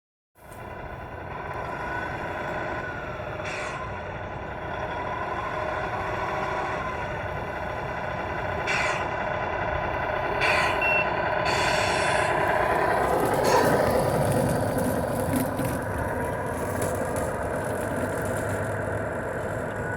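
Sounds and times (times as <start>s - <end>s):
large truck running: 0.4s - 19.9s
short air hisses: 11.5s - 12.3s.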